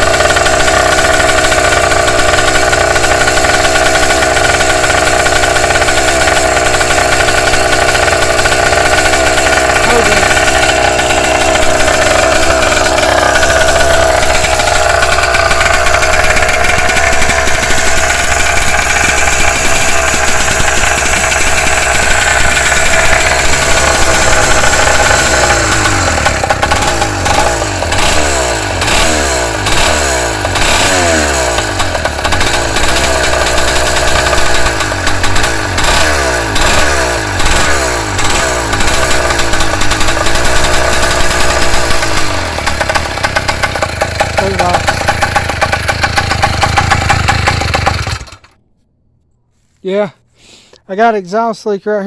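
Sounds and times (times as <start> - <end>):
engine revving: 0.0 - 48.6
engine running loudly: 0.0 - 48.6.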